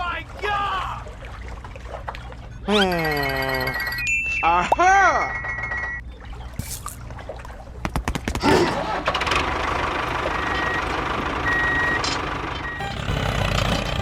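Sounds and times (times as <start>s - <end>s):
reversing alarm beeps: 2.6s - 6.0s, 10.3s - 13.4s
motor rumble: 8.8s - 14.0s.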